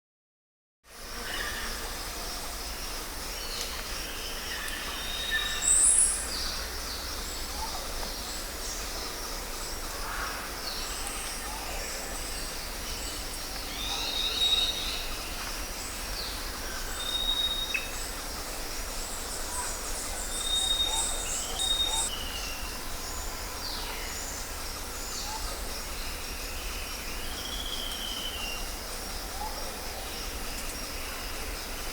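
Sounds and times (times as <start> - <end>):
steady background hiss: 0.9 - 31.9
bird calls and chirps: 19.3 - 23.2.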